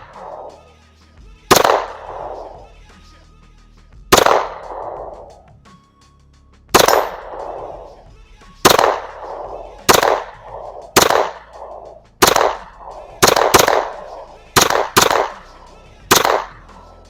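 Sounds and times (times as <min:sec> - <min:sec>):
pistol shots echoing: 0:00.0 - 0:00.7, 0:01.5 - 0:02.7, 0:04.2 - 0:05.4, 0:06.8 - 0:08.0, 0:08.7 - 0:17.0.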